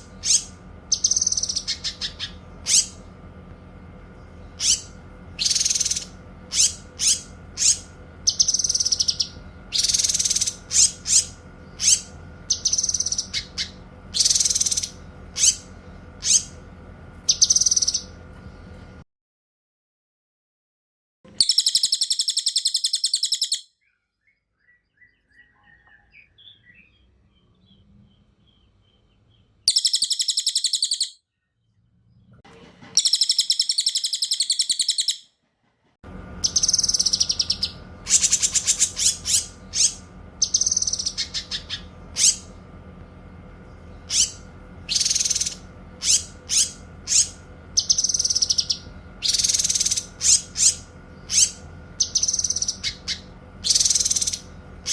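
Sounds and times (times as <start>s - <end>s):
sharp high bird calls: 0.0s - 3.0s, 4.4s - 16.6s, 21.3s - 27.1s, 29.7s - 31.2s, 33.0s - 35.3s, 36.4s - 42.6s, 43.9s - 54.9s
songbirds trilling: 0.0s - 18.8s, 21.3s - 32.4s, 33.0s - 35.3s, 36.2s - 54.9s
steady background hum: 0.0s - 19.0s, 21.3s - 54.9s.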